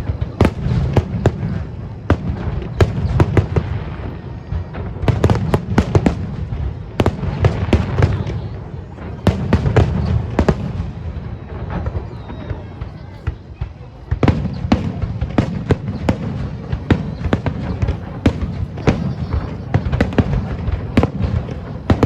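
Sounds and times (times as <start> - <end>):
fireworks cracking and banging: 0.0 - 22.0.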